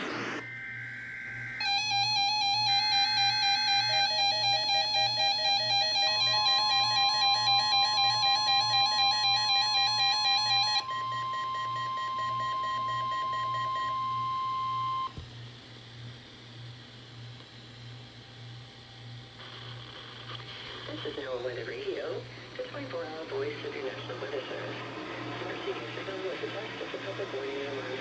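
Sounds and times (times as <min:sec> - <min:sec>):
steady alarm tone: 0:00.0 - 0:15.1
warbling electronic alarm beep: 0:01.5 - 0:15.1.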